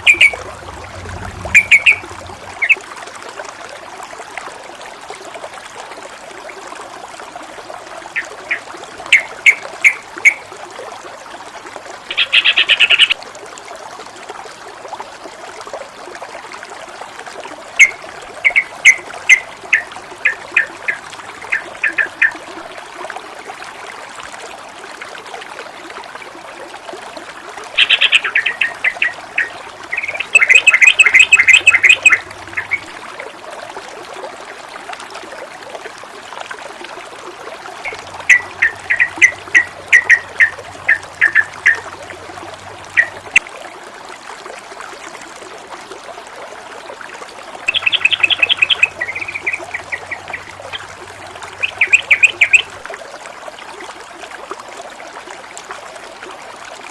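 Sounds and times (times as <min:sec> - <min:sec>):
small bird chirping rapidly: 0:00.0 - 0:00.4, 0:01.5 - 0:02.8, 0:27.8 - 0:32.8, 0:47.7 - 0:50.8, 0:51.6 - 0:52.7
water trickling and splashing: 0:00.0 - 0:56.9.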